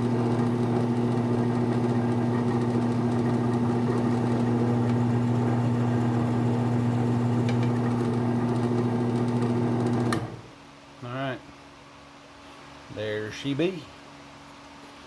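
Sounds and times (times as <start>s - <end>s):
drill bit boring wood: 0.0s - 10.4s
drill press motor humming: 0.0s - 10.6s.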